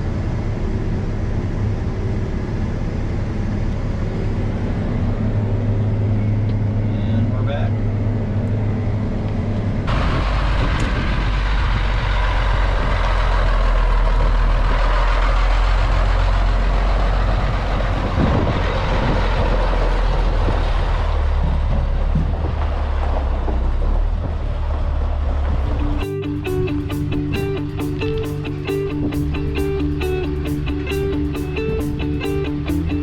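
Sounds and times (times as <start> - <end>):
combine harvester engine droning: 0.0 - 33.0
rushing noise: 9.9 - 21.7, 24.3 - 33.0.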